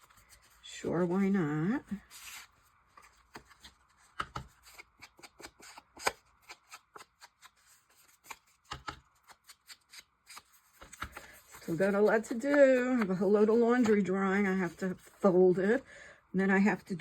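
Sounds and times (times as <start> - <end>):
paper rustling: 2.0 - 15.4.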